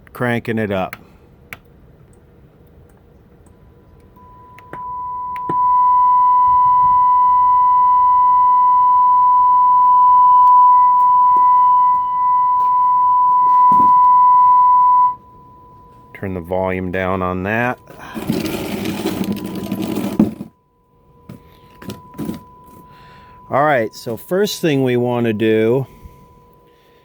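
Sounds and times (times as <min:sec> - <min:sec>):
radio test tone: 0:04.2 - 0:19.8, 0:21.3 - 0:26.6.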